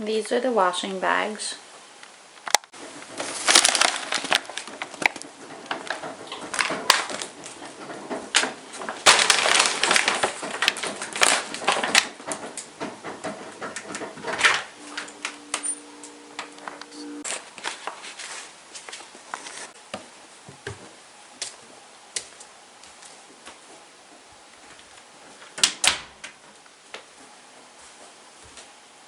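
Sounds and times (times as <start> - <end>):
bags crinkling and rustling: 2.5 - 19.8
two-note low hum: 14.8 - 17.3.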